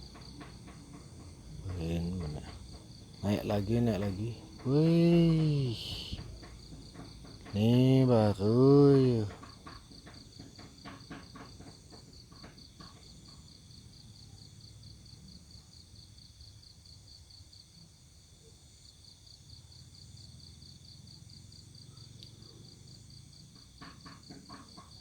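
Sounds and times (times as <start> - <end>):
insects chirping: 0.0 - 25.0
low steady rumble: 1.2 - 6.4.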